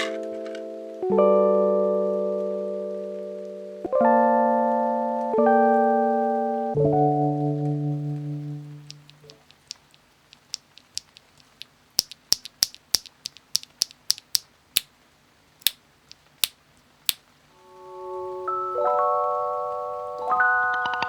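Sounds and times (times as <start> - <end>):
plastic keyboard clicks: 8.9 - 14.9.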